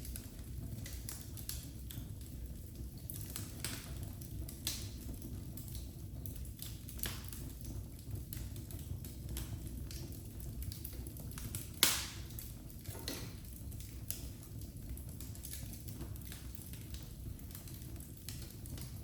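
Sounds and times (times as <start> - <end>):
fire crackling in fireplace: 0.0 - 19.0
low rumble of flames: 0.0 - 19.0
loud fire pop: 11.8 - 12.3.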